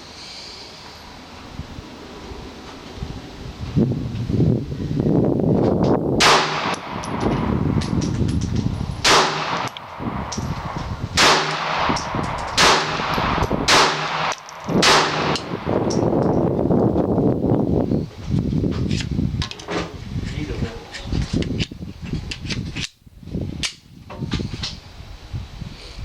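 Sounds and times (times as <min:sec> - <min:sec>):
faint distant gunshots: 0:06.2 - 0:07.6, 0:09.0 - 0:15.8
pistol shots with echo: 0:06.2 - 0:07.9, 0:09.0 - 0:16.0.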